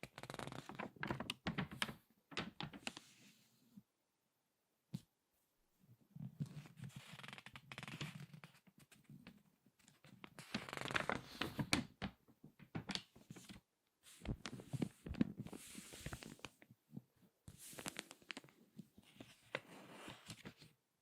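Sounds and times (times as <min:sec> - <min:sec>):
magazine pages crinkling: 0:00.2 - 0:03.0, 0:10.4 - 0:11.9, 0:17.6 - 0:18.5.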